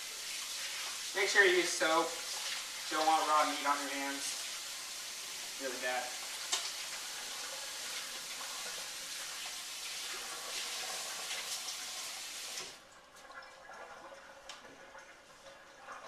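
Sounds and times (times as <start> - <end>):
tap water running: 0.0 - 16.0.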